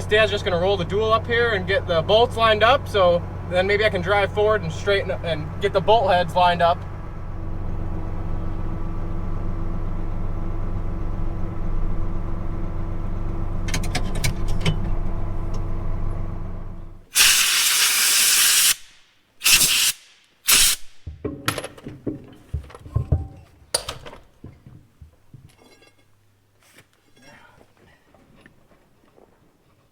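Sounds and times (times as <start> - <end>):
tractor engine running: 0.0 - 25.4
hissing bursts: 17.1 - 21.1
metal knocks: 21.0 - 26.0.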